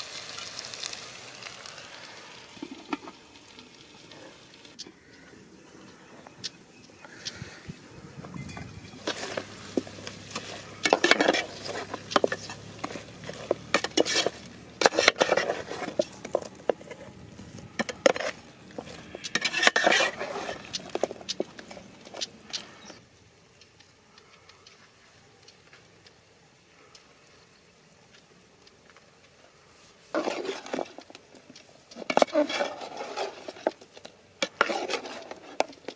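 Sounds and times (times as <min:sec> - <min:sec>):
metal utensil scraping cooking pot: 0:08.4 - 0:22.9, 0:30.1 - 0:31.1, 0:31.9 - 0:33.8, 0:34.4 - 0:35.9.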